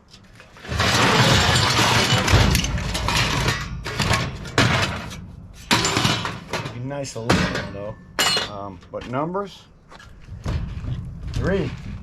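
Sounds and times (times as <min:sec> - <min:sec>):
scrap metal clattering: 0:00.2 - 0:08.6.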